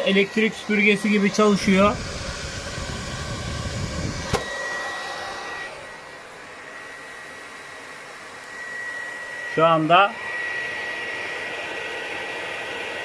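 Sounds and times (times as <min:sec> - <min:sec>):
cooling fan running loud: 0:00.0 - 0:13.0
sharp click: 0:04.3 - 0:04.5.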